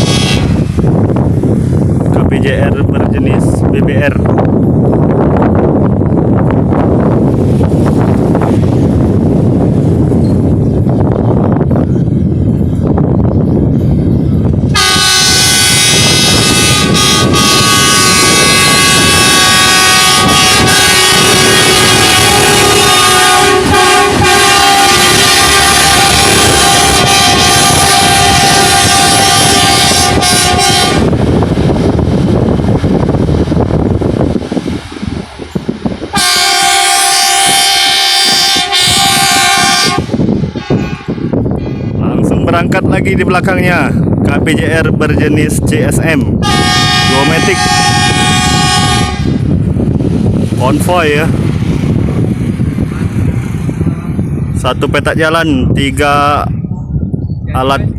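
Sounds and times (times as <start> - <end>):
multi-tone air horn: 0.0 - 0.6, 14.7 - 31.1, 36.1 - 42.0, 46.4 - 49.4.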